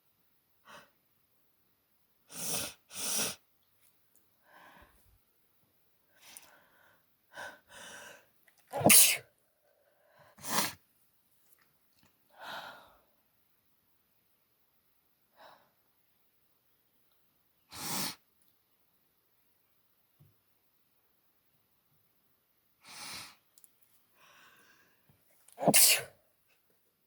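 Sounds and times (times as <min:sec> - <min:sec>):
woman sneezing: 0:08.8 - 0:09.2, 0:25.6 - 0:26.2
breathy inhales: 0:24.2 - 0:25.1.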